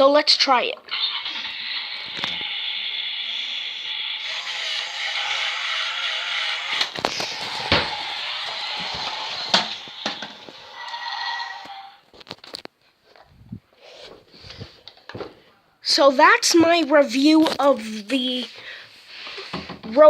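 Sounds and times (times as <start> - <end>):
toy car engine and tyre screech: 0.9 - 12.1.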